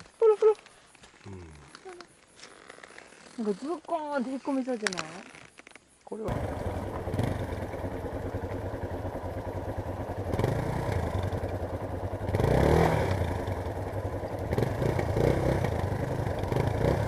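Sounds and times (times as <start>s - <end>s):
motorcycle engine at low revs: 6.3s - 17.0s.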